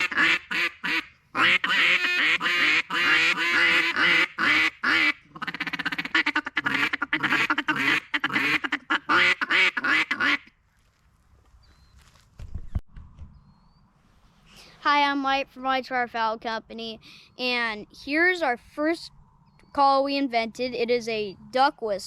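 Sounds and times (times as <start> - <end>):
duck call quacks: 0.0 - 10.5.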